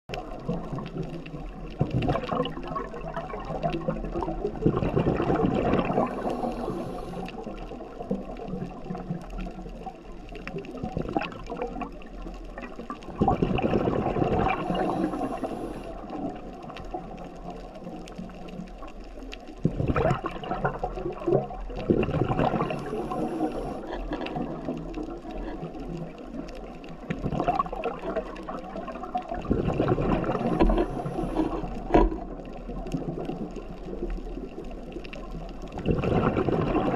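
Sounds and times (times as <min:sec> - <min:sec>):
bubbles gurgling underwater: 0:00.1 - 0:36.9
regulator hiss: 0:06.1 - 0:07.4.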